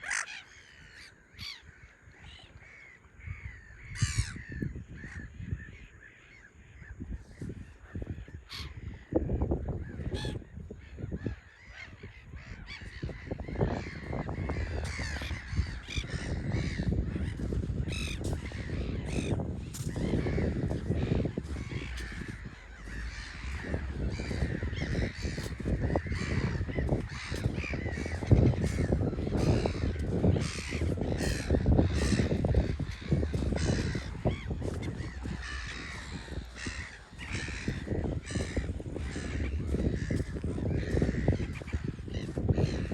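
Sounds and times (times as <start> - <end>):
gulls calling: 0.0 - 42.9.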